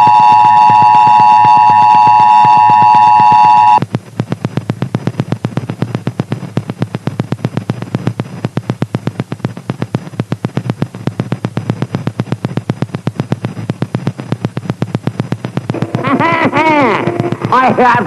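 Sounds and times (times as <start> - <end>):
two-tone attention signal: 0.0 - 3.8
fast sharp clicks: 0.0 - 18.0.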